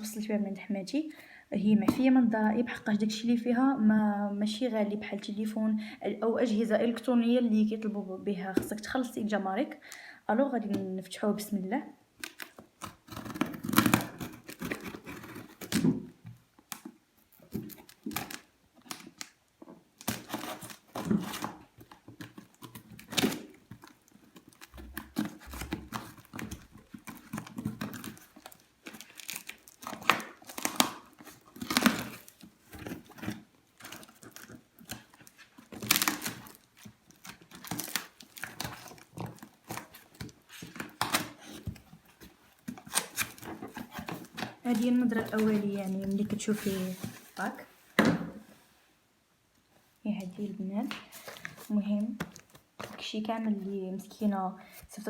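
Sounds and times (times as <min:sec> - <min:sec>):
cardboard and wrapping rustling: 0:12.2 - 0:48.8, 0:49.8 - 0:55.0
packing tape ripping: 0:20.0 - 0:41.8, 0:42.7 - 0:45.9.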